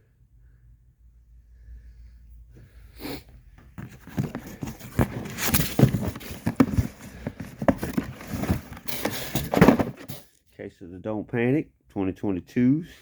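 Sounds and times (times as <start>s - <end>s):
cardboard knocks and scrapes: 3.6s - 10.2s.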